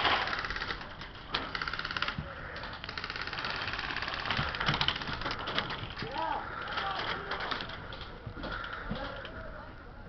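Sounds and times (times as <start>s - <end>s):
airsoft guns firing bursts: 0.0s - 6.1s.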